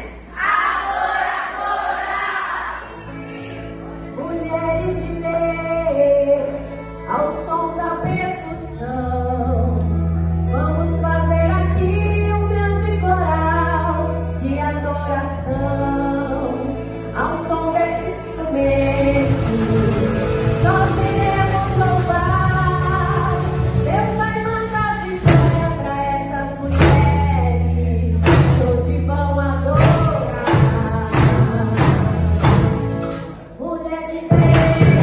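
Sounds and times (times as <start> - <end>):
instrumental accompaniment: 2.9 - 35.0
women singing worship song: 18.5 - 32.3, 33.6 - 35.0.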